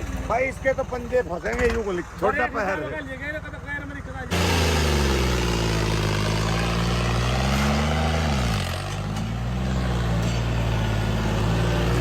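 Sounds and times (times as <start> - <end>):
tractor engine under load: 4.0 - 12.0.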